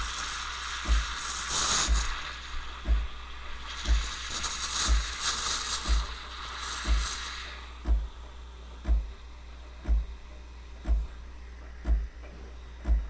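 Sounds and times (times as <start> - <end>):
espresso machine humming: 0.0 - 13.0
low pump thump: 0.8 - 1.2, 2.8 - 4.2, 4.8 - 5.2, 7.8 - 9.2, 9.8 - 11.2, 11.8 - 13.0.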